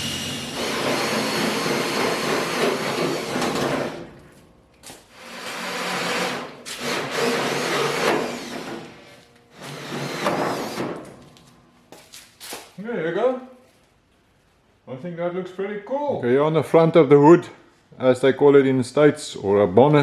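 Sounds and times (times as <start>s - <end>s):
power drill boring through steel: 0.0s - 4.0s, 5.2s - 9.0s, 9.6s - 10.9s.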